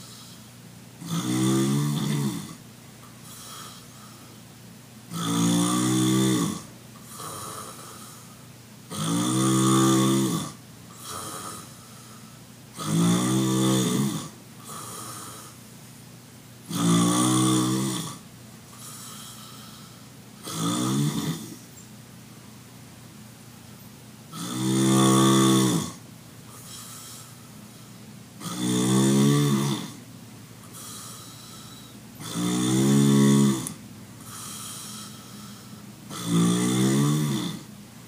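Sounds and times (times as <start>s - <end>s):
quiet breath: 0.0s - 0.7s, 3.0s - 4.5s, 7.0s - 8.6s, 10.9s - 12.5s, 18.7s - 20.3s, 26.5s - 28.2s, 30.6s - 32.1s, 34.2s - 36.0s
person snoring loudly: 0.0s - 2.6s, 3.2s - 4.4s, 5.1s - 15.6s, 16.7s - 21.6s, 24.3s - 27.5s, 28.4s - 30.0s, 30.6s - 37.7s.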